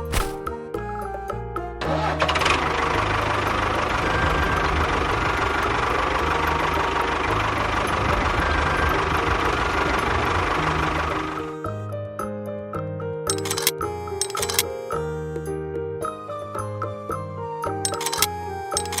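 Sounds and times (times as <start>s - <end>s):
small engine rattling: 13.3s - 14.7s, 17.9s - 19.0s.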